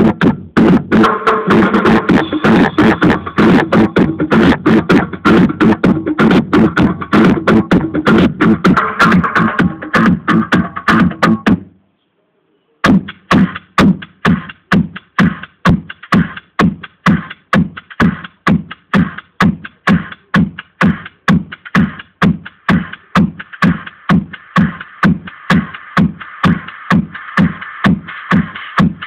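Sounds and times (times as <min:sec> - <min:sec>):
electronic dance music: 0:00.0 - 0:11.7, 0:12.8 - 0:29.0
fast kick drum beat: 0:00.0 - 0:11.7, 0:12.8 - 0:29.0.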